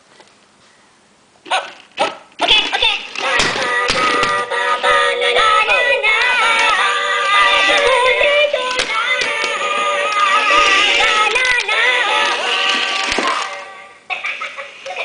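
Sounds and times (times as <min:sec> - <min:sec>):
high-pitched synthetic voices singing: 0:02.7 - 0:15.0.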